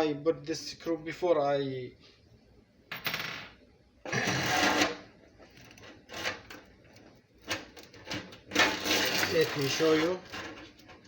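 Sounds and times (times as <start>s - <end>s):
metal parts rattling: 7.5s - 11.0s.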